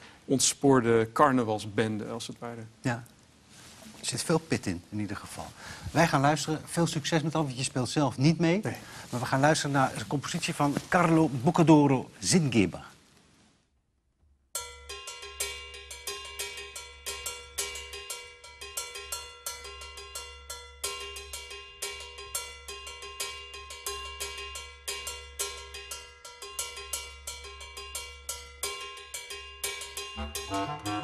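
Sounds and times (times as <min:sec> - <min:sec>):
ringing metal percussion: 0:14.6 - 0:31.0
brass instruments: 0:30.2 - 0:31.0.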